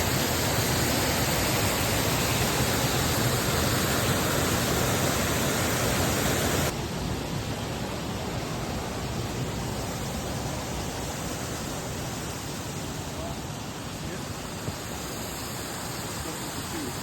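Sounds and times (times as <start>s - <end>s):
waterfall pouring over rock: 0.0s - 6.8s.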